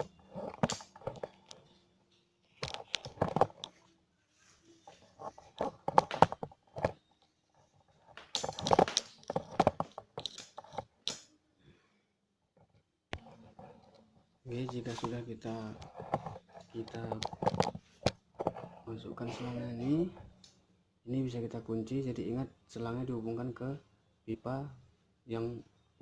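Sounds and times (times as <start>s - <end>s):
hose crinkling and clicking: 0.0s - 3.9s, 4.9s - 11.3s, 12.6s - 19.6s.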